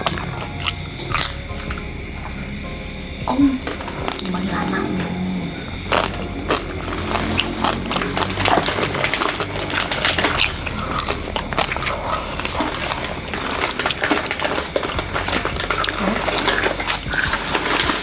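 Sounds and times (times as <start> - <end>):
chewing and smacking: 0.0 - 18.0
steady low hum: 0.0 - 18.0.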